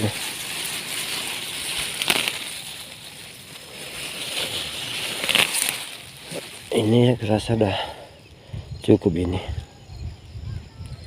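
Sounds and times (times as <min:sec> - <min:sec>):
leaves rustling and crackling: 0:00.0 - 0:08.4.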